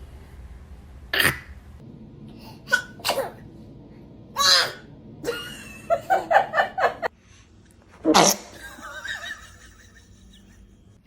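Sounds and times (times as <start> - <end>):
baby sneezing: 2.7 - 3.4, 8.1 - 8.5.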